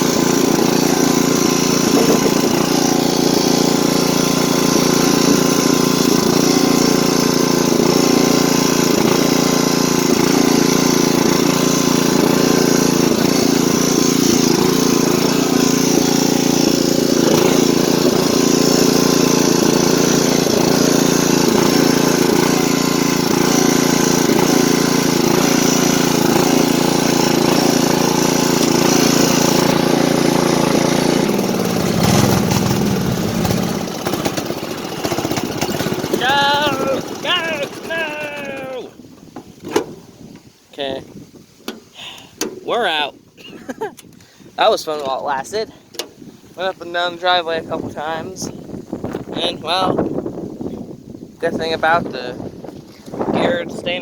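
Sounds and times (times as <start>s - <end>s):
lawn tractor engine running: 0.0s - 39.9s.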